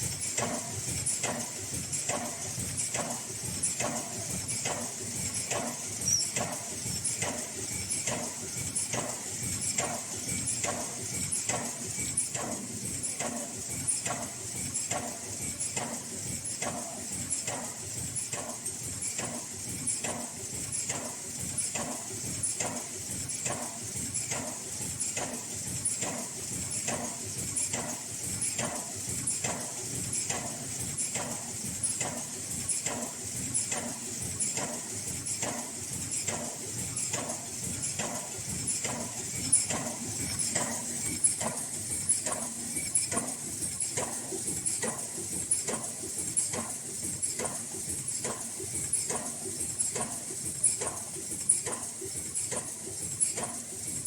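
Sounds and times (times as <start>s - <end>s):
machine clacking: 0.2s - 54.0s.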